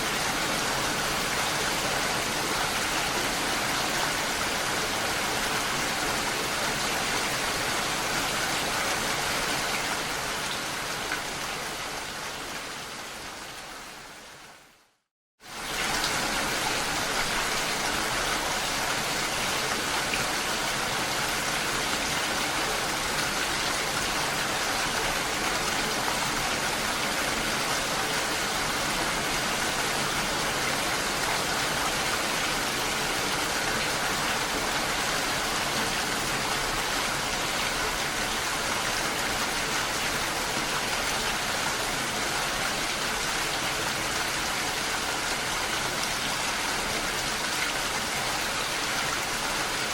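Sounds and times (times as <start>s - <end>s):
rain falling on a lake: 0.0s - 49.9s.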